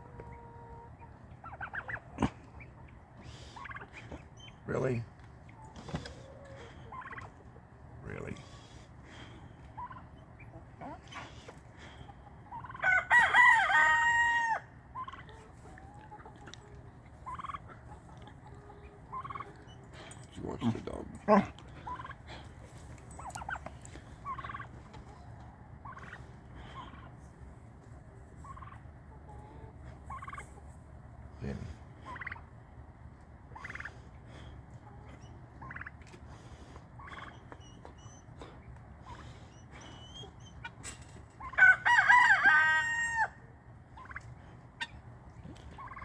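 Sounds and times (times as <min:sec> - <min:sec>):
poultry calling: 0:00.0 - 0:30.8, 0:33.4 - 0:46.0
loud rooster crow: 0:12.8 - 0:14.7, 0:41.4 - 0:43.4.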